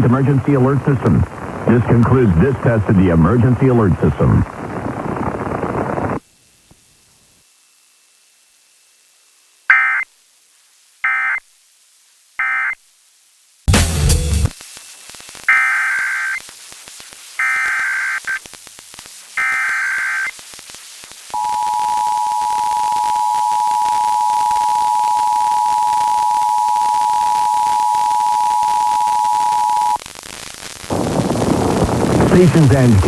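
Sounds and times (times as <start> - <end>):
digital data tone bursts: 11.0 - 11.4, 15.5 - 16.4, 17.4 - 18.5, 19.4 - 20.4, 21.3 - 30.0
two-tone attention signal: 21.4 - 30.0.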